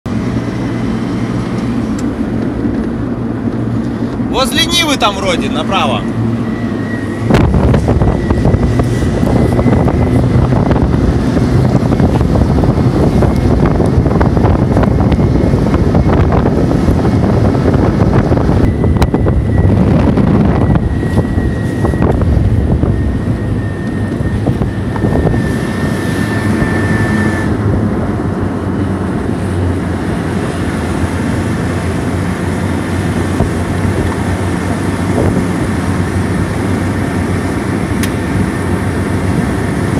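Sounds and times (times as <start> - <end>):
all-terrain vehicle engine: 0.1 - 4.3, 6.0 - 39.9
thin high whine: 3.7 - 27.8.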